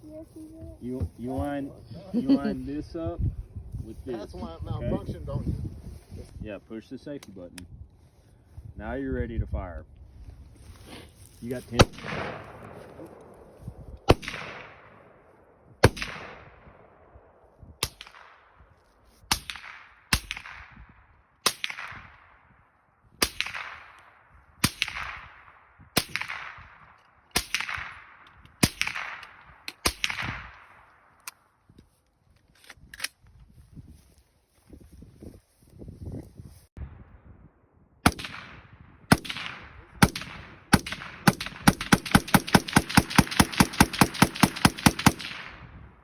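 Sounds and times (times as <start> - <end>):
rifle shots with echo: 11.7 - 18.7, 19.3 - 22.6, 23.2 - 31.2, 38.0 - 46.0.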